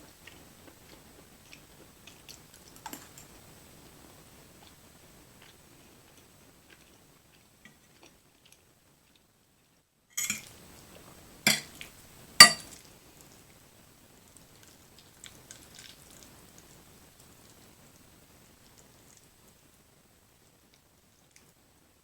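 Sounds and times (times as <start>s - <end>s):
faint chewing clicks: 0.0s - 9.3s, 14.2s - 19.7s, 20.5s - 21.6s
cutlery knocking against dish: 11.5s - 11.8s, 12.4s - 12.7s.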